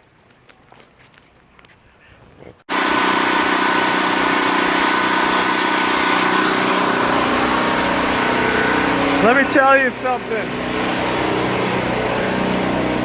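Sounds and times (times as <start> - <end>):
generator engine running: 2.7 - 13.0.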